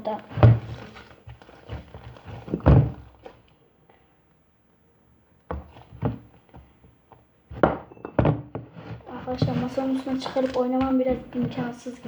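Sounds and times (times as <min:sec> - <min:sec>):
thumps and knocks on table: 0:00.3 - 0:03.2, 0:05.5 - 0:06.7, 0:07.5 - 0:11.6.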